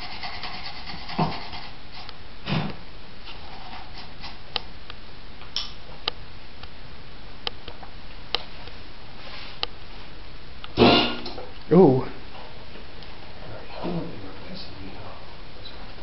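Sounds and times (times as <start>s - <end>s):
background hiss: 0.0s - 16.0s.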